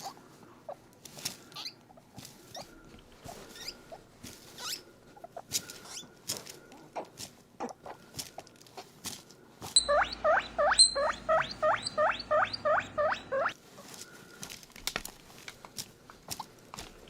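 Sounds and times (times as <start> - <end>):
toy guinea pig squeaks: 1.6 - 1.8, 3.5 - 3.8, 4.6 - 6.1, 9.8 - 13.6.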